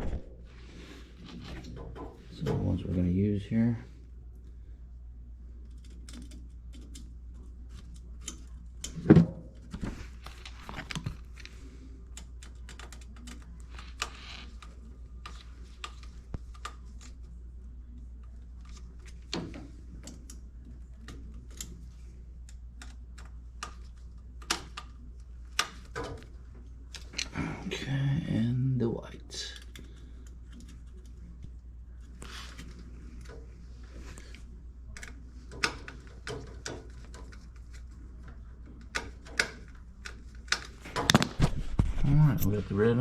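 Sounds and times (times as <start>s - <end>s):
steady low hum: 0.0s - 43.0s
clicks and taps of wiring work: 5.7s - 7.1s, 7.7s - 9.0s, 18.2s - 27.3s, 34.3s - 41.4s.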